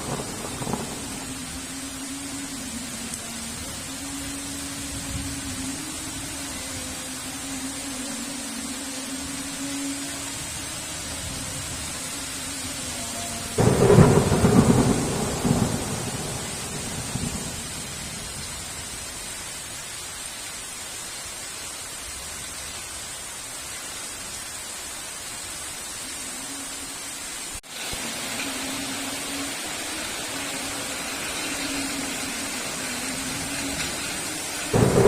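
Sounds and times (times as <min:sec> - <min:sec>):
loud thunderclap rumbling: 0:00.0 - 0:01.4, 0:13.6 - 0:18.4, 0:34.7 - 0:35.0
heavy rain hiss: 0:00.0 - 0:35.0.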